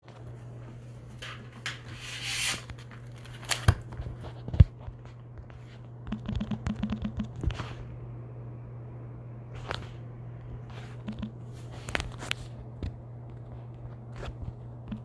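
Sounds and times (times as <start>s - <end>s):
low electrical hum: 0.0s - 15.0s
clicks and taps: 6.0s - 7.6s, 11.0s - 11.4s.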